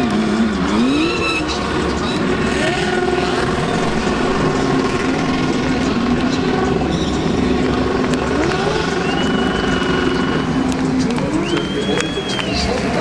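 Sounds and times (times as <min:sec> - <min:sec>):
race car engine running: 0:00.0 - 0:13.0.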